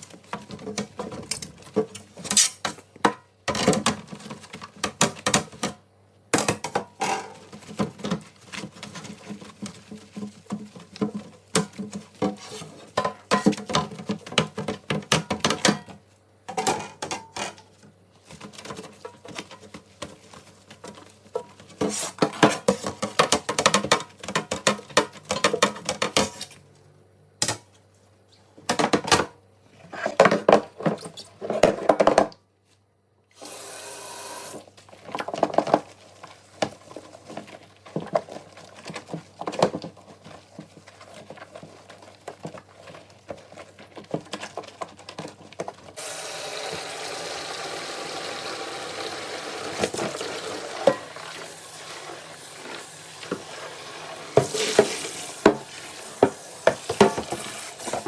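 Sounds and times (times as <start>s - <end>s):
dishes and containers clattering: 6.4s - 17.7s, 18.5s - 26.5s, 49.7s - 53.6s, 54.3s - 58.0s.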